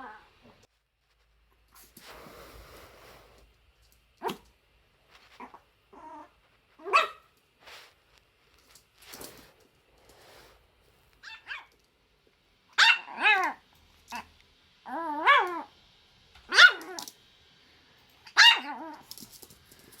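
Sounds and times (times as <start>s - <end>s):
small dog yipping: 5.4s - 7.3s, 11.2s - 11.7s, 12.7s - 14.3s, 14.9s - 15.7s, 16.5s - 17.1s, 18.2s - 19.1s.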